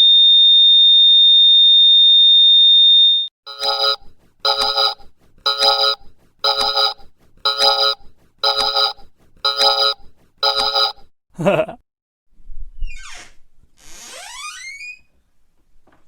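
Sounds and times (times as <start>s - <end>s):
electronic buzzer beeping: 3.5s - 11.1s.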